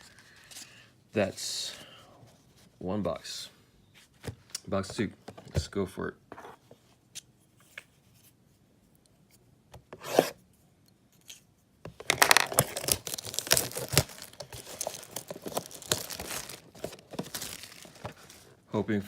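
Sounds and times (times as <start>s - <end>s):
packaging tearing and crinkling: 12.0s - 18.5s.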